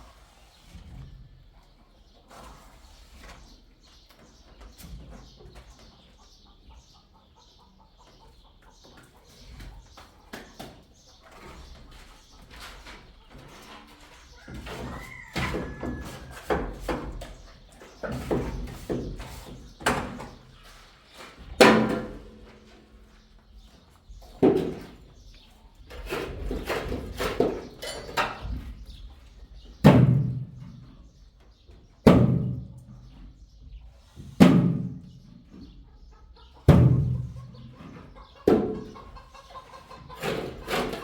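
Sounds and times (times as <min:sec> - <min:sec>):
knocks and bangs: 0:29.8 - 0:30.6, 0:32.0 - 0:32.8, 0:36.7 - 0:37.6.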